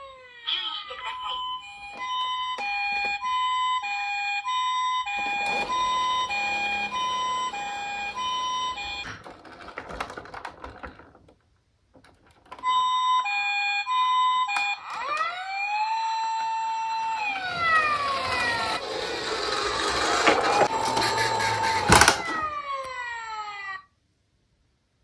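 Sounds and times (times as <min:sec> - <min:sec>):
wailing siren: 0:00.0 - 0:09.5, 0:12.6 - 0:23.9
two-tone toy siren: 0:00.0 - 0:10.2, 0:12.5 - 0:23.9
rattle: 0:05.2 - 0:12.6, 0:17.6 - 0:22.5.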